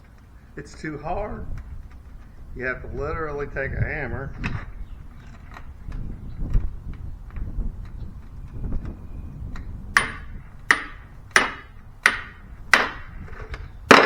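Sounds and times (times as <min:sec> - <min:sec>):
hammer striking metal socket: 0:10.0 - 0:13.0.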